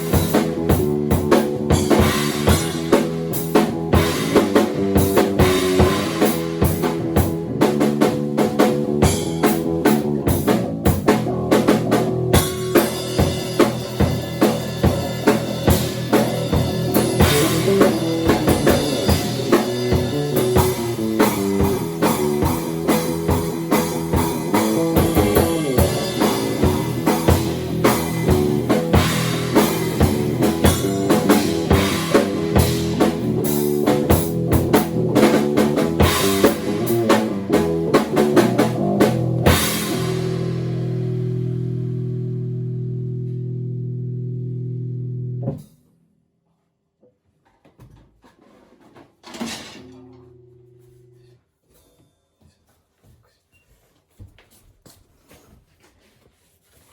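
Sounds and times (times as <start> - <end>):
busy drumming: 0.0 - 41.9
bass guitar line: 0.0 - 45.7, 49.8 - 51.2.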